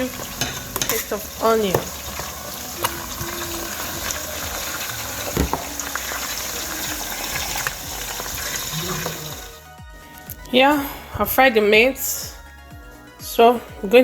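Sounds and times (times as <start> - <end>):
meat sizzling in oil: 0.0 - 9.6.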